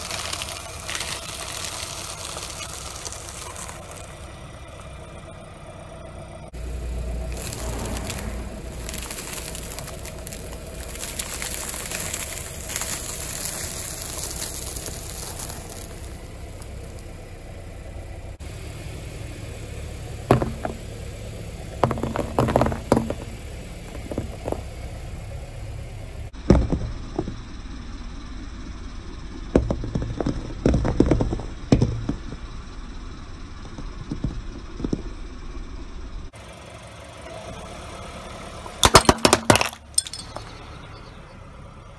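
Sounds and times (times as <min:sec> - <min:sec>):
car engine running slowly: 0:00.0 - 0:41.9
tyre crushing objects: 0:07.3 - 0:16.2, 0:20.3 - 0:21.0, 0:21.7 - 0:24.8, 0:29.5 - 0:32.6.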